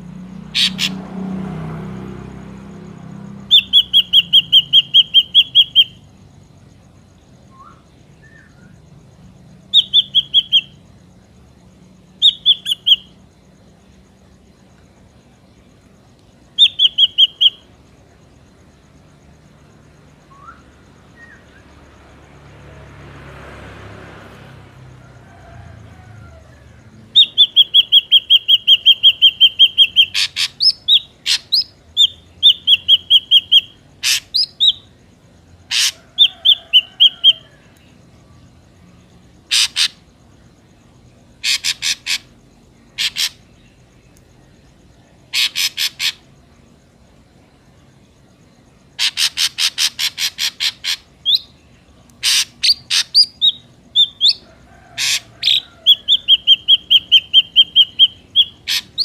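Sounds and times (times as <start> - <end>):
bird whistled notes: 20.3 - 21.5
bird harsh buzzy rattling calls: 35.7 - 36.0, 39.5 - 40.0, 41.4 - 42.4, 49.0 - 51.3, 52.2 - 53.4.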